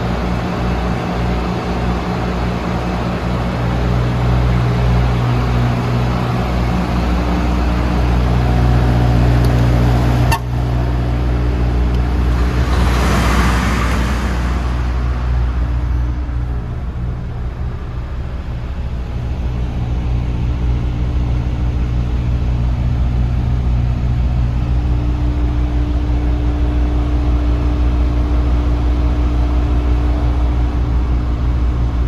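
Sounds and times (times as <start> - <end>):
steady hum: 0.0 - 22.1
truck diesel engine running: 0.0 - 32.0.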